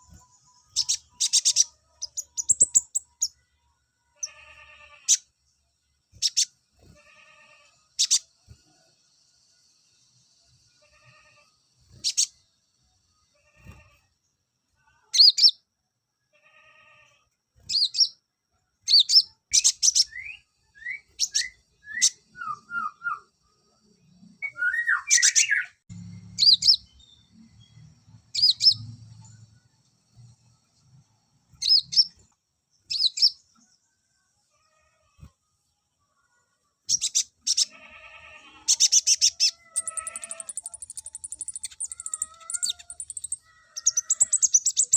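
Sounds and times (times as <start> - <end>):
bird calling: 38.7 - 44.9.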